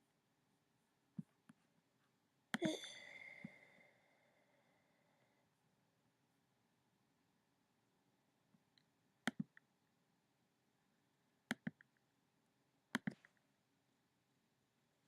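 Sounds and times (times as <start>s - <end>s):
computer mouse double-clicks: 11.5s - 11.9s.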